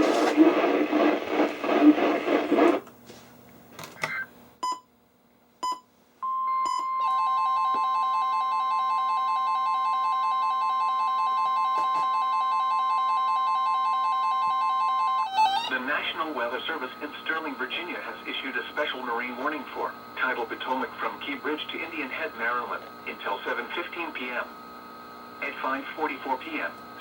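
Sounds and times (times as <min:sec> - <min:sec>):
short beeps: 0:05.6 - 0:07.2
steady warning alarm tone: 0:06.2 - 0:15.9
pulsing weather radio alarms: 0:07.0 - 0:16.5
broadcast voice: 0:15.6 - 0:24.6, 0:25.4 - 0:26.8.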